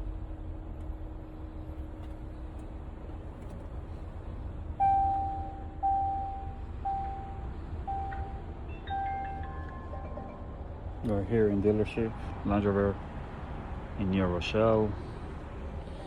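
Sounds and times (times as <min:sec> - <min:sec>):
electronic warning chime: 0:04.8 - 0:10.8.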